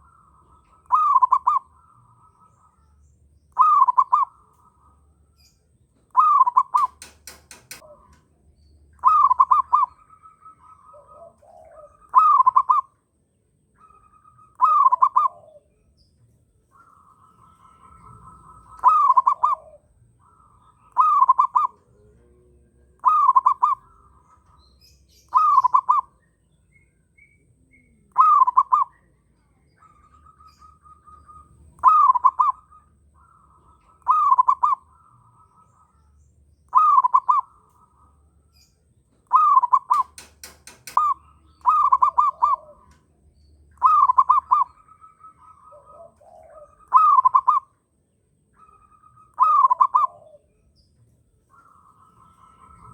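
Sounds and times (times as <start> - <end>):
dove cooing: 0.0 - 13.1, 13.8 - 47.9, 48.5 - 52.9
faint bird calls: 0.0 - 52.9
sharp clicks: 6.6 - 8.2, 39.7 - 41.9.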